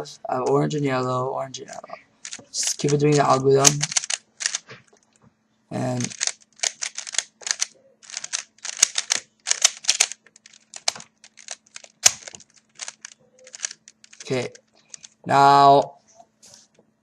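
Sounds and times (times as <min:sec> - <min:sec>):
puzzle cube layers clicking: 0:01.7 - 0:04.6, 0:05.8 - 0:15.2.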